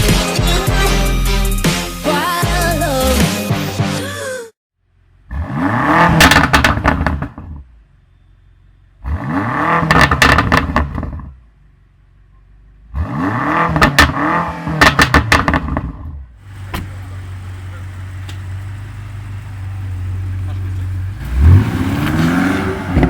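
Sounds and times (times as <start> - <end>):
car engine revving: 5.0 - 23.0
exhaust crackles: 5.0 - 23.0.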